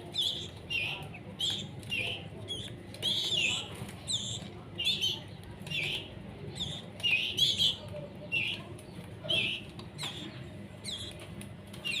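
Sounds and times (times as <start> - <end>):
young canaries cheeping: 0.0 - 12.0.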